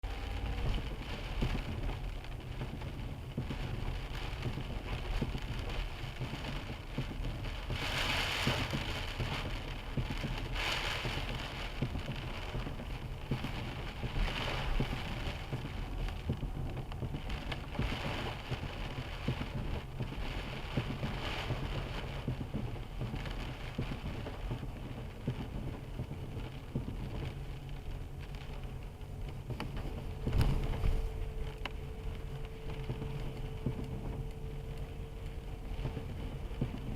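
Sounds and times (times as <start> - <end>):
car engine and road rumble: 0.0 - 36.9
rain and wet tyres hissing: 0.0 - 36.9.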